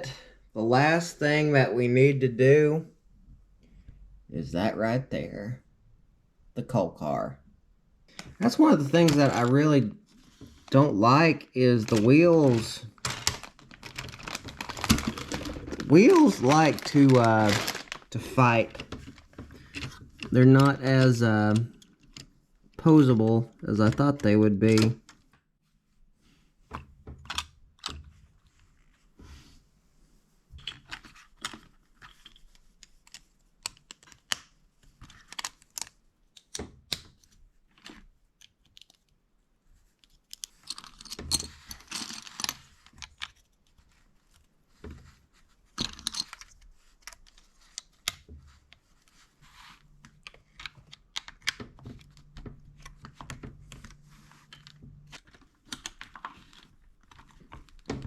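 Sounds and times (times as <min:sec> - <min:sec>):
rustle of loose plastic pieces: 0:11.8 - 0:22.3, 0:39.8 - 0:58.0.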